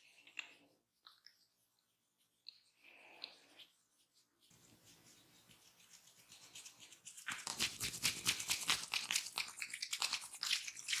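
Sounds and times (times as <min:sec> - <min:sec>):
hands rubbing briskly: 0:03.6 - 0:09.5.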